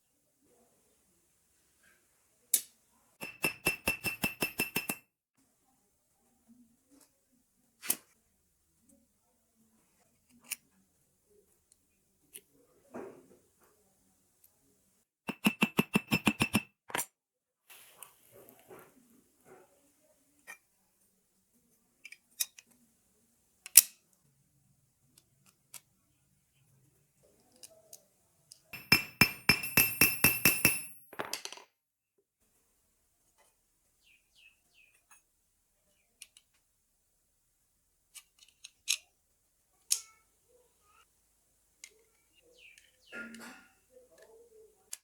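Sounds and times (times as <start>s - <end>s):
fast ringing metallic clicks: 3.2s - 5.0s, 15.3s - 16.6s, 28.8s - 31.0s.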